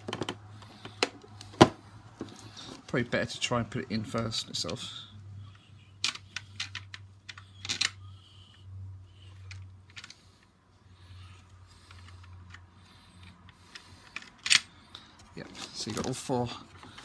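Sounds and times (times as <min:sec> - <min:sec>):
steady low hum: 0:00.0 - 0:15.8
clicks and taps of metal parts: 0:06.0 - 0:08.0.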